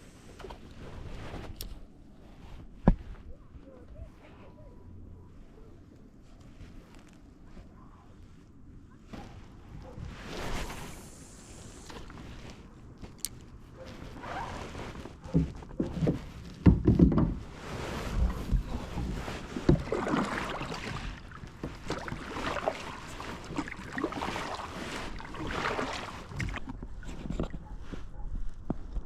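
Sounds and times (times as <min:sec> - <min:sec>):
paddle strokes swishing in water: 0:09.0 - 0:13.0, 0:13.6 - 0:29.0.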